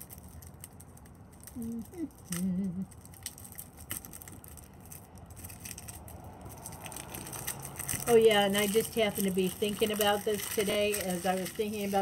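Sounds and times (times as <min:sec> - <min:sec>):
cellophane crinkling: 0:00.0 - 0:12.0
woman humming: 0:01.6 - 0:02.9.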